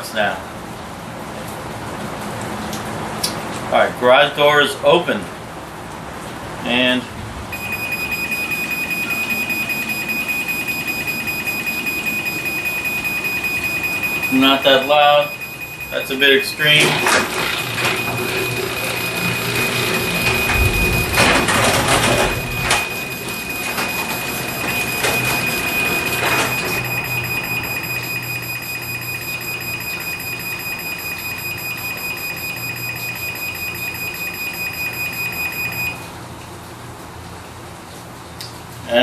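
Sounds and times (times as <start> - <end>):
rapid pulsing warning beep: 7.5 - 36.0
garage door rumbling and rattling: 16.8 - 27.2.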